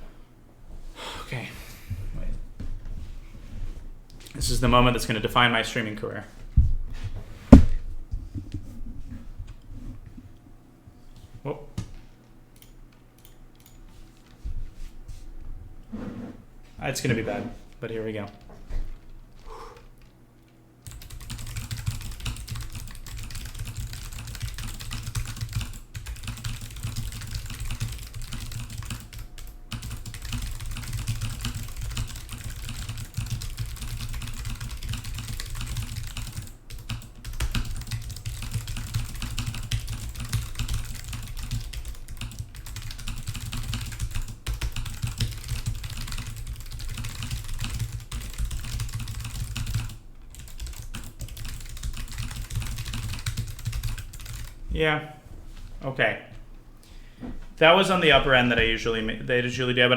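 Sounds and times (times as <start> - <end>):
fast typing on computer keyboard: 20.8 - 54.6.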